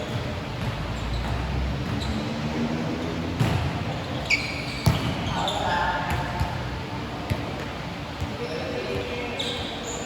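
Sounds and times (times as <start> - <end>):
sneaker squeak: 0.0 - 6.3, 8.2 - 10.0.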